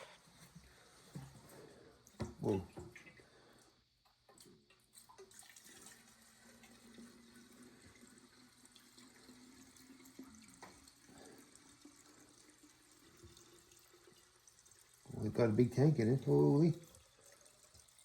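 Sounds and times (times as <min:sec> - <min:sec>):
fuel pouring into a tank: 0:04.4 - 0:18.0.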